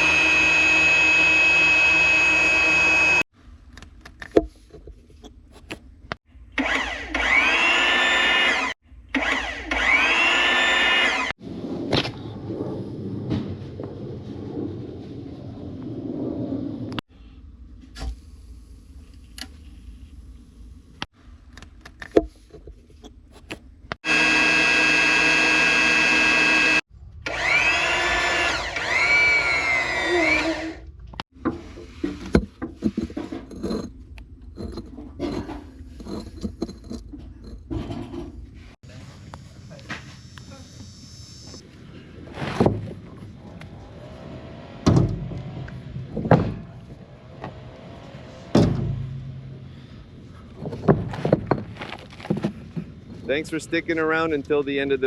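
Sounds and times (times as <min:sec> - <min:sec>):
power tool running: 0:00.0 - 0:03.3, 0:06.6 - 0:11.4, 0:24.0 - 0:30.8
power tool with wavering pitch: 0:00.0 - 0:03.3, 0:06.6 - 0:11.4, 0:24.0 - 0:30.9
knocks and clatter of tools: 0:31.4 - 0:38.4.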